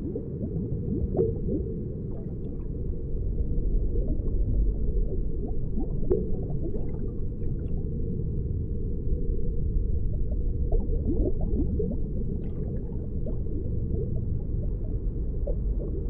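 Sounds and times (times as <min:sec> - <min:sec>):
aquarium water bubbling: 0:00.0 - 0:16.0.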